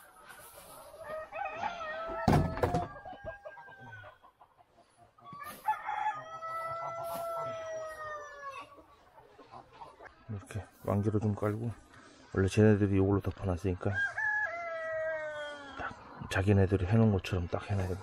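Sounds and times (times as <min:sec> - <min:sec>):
rooster crowing: 0:05.4 - 0:08.6.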